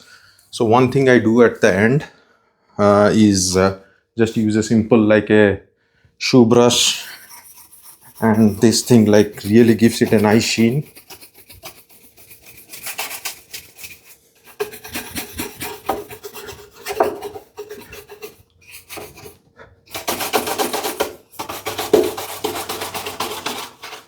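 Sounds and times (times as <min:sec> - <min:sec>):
brush scrubbing on wood: 0:06.8 - 0:24.0.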